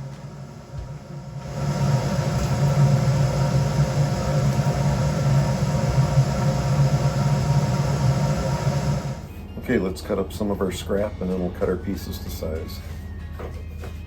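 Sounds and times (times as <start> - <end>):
table saw running: 0.0 - 9.3.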